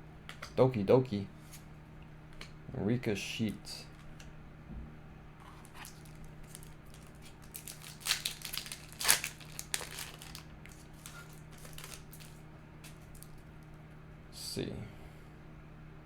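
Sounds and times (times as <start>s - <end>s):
foil wrapper crinkling and tearing: 5.5s - 13.5s.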